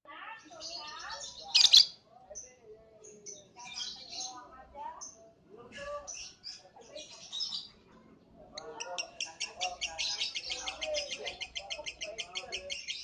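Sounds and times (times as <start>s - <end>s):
lovebird chirping: 0.5s - 2.0s.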